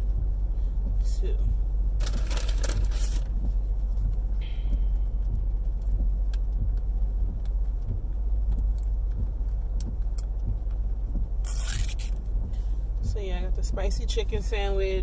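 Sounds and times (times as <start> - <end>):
car cabin low rumble: 0.0 - 15.0
food packaging clicks and rustles: 2.0 - 3.3.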